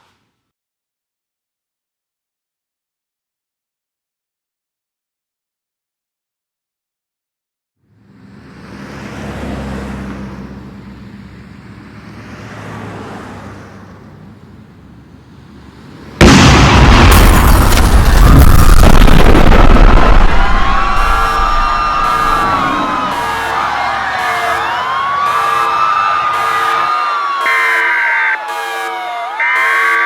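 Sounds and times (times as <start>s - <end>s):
loud explosion: 16.2s - 23.3s
wavering siren-like tone: 20.7s - 30.0s.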